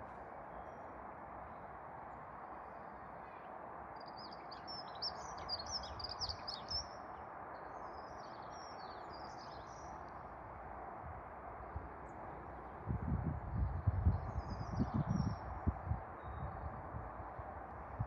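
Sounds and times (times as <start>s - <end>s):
small birds chirping: 4.0s - 7.1s.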